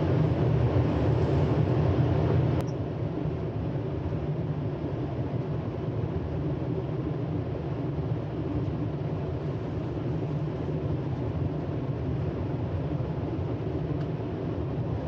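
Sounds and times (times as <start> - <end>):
air-moving machinery humming: 0.0 - 2.7.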